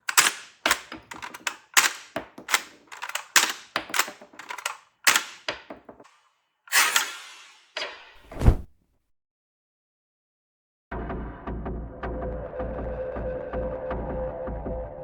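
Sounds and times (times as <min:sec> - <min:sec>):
toy gun plastic clacks: 0:00.0 - 0:08.0.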